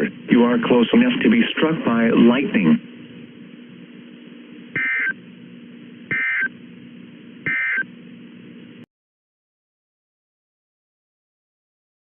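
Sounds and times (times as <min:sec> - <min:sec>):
steady low hum: 0:00.0 - 0:08.9
warbling data tone bursts: 0:04.8 - 0:05.2, 0:06.1 - 0:06.5, 0:07.5 - 0:07.9.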